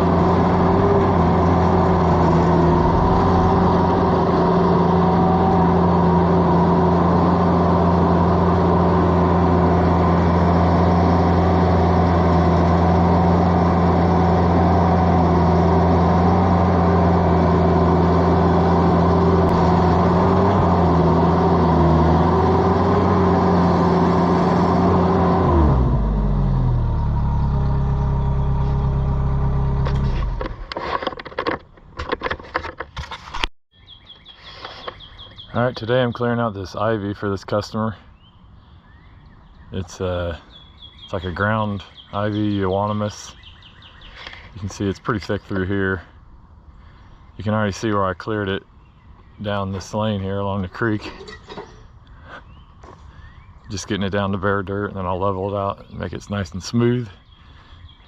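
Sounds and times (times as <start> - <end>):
skid steer engine running: 0.0 - 32.7.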